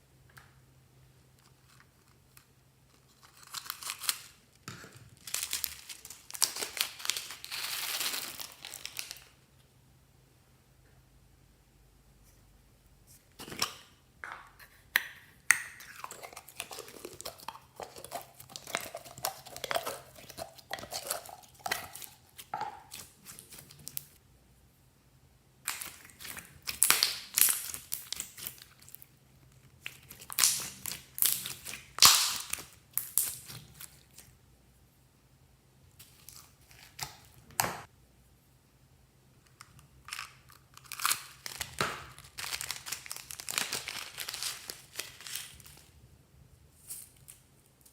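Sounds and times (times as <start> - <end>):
slime squishing by hand: 13.3 - 24.2, 25.7 - 34.4.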